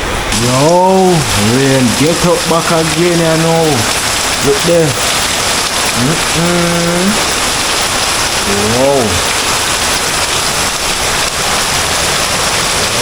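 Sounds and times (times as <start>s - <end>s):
heavy rain pouring: 0.0s - 13.0s
man saying wow: 0.4s - 5.0s, 6.0s - 7.2s, 8.4s - 9.2s.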